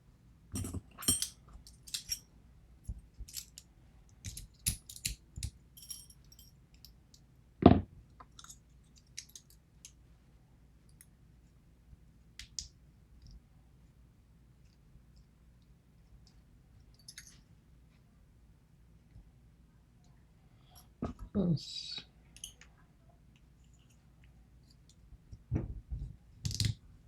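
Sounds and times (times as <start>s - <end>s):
metal lock parts clinking: 0.6s - 2.3s, 3.2s - 3.6s, 4.2s - 6.9s.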